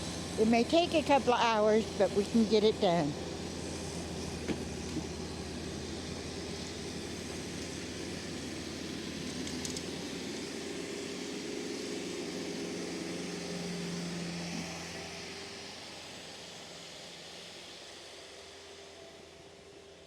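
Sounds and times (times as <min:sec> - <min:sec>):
steady hum: 0:00.0 - 0:06.6
tractor engine drone: 0:00.0 - 0:20.0.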